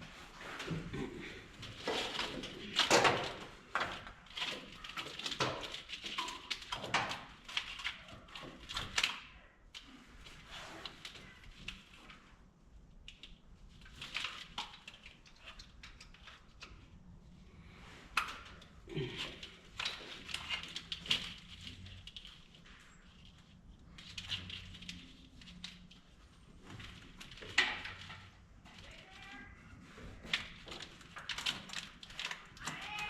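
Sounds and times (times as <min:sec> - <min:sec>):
clicks and knocks of parts handled: 0:01.5 - 0:12.2, 0:18.0 - 0:33.0.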